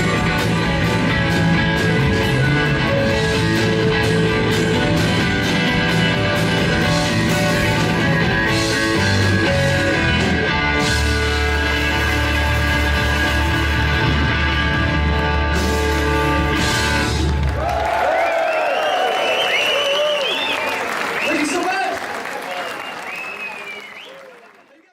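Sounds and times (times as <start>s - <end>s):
electric guitar: 0.0s - 17.7s.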